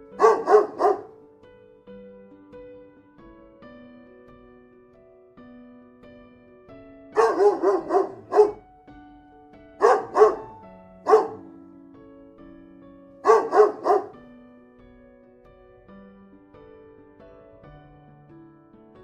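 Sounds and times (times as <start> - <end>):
soft piano music: 0.0 - 19.0
dog barking: 0.1 - 1.2, 7.2 - 8.6, 9.8 - 11.4, 13.2 - 14.3.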